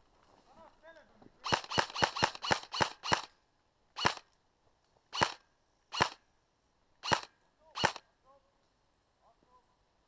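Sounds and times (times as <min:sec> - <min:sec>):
airsoft gun shots: 0:01.4 - 0:03.3, 0:04.0 - 0:04.2, 0:05.2 - 0:06.2, 0:07.0 - 0:08.0.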